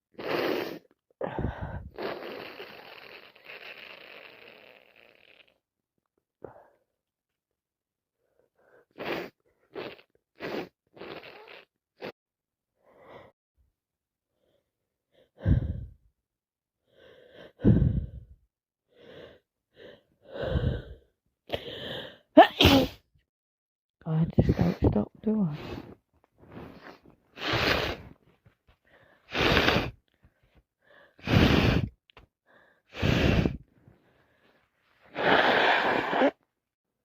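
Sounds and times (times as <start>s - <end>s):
person sneezing: 22.4s - 23.0s, 35.1s - 36.4s.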